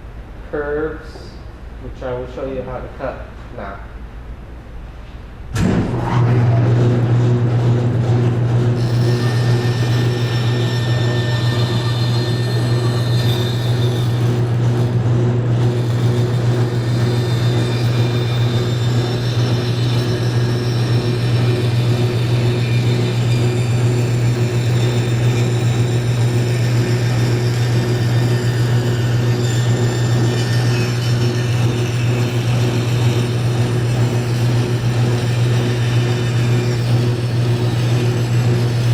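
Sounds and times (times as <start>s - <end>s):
band saw motor hum: 5.6s - 38.9s
saw blade cutting wood: 8.8s - 38.9s.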